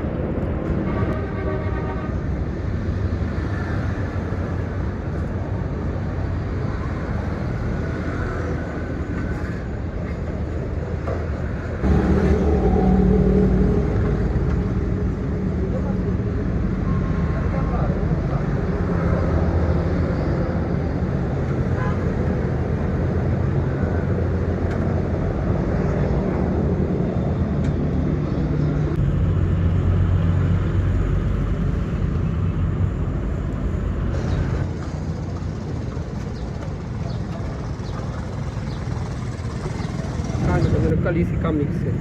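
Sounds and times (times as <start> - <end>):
vehicle engine running: 11.8 - 16.4, 29.0 - 41.0.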